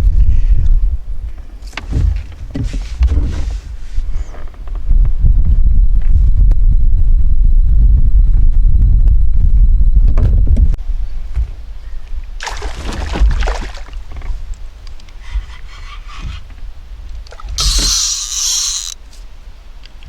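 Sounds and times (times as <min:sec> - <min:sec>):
wind rumble on microphone: 0:00.0 - 0:18.6
scrapes and knocks in hull: 0:01.8 - 0:03.7.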